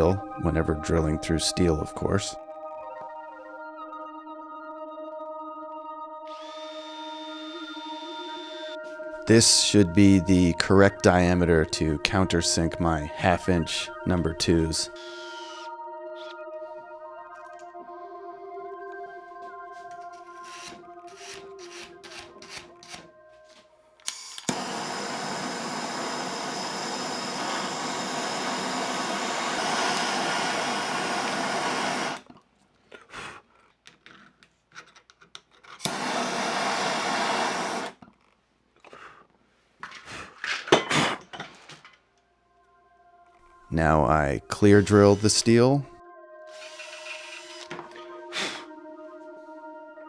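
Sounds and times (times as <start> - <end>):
background music: 0.0 - 32.2, 42.0 - 50.0
drill running into steel: 6.3 - 8.8, 24.1 - 32.3, 35.8 - 38.0, 44.8 - 45.5, 46.5 - 48.0.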